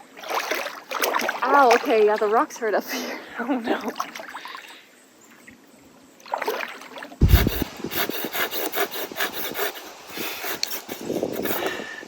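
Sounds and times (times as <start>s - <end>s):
hard bump on microphone: 7.2s - 7.8s
fingers rubbing over microphone: 7.2s - 11.8s.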